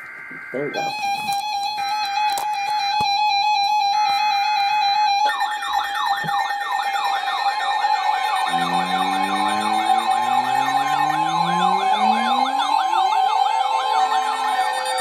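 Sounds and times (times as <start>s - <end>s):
warbling siren-like sweep: 7.7s - 15.0s
steady electronic tone: 8.4s - 13.1s
buzzing data bursts: 8.5s - 12.9s
rising tones: 8.5s - 13.2s.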